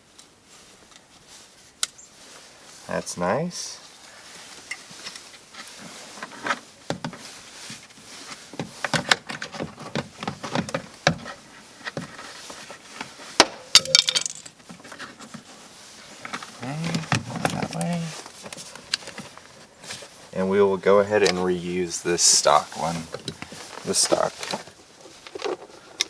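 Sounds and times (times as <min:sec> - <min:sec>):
small hard parts clicking and clinking: 0:13.7 - 0:14.6.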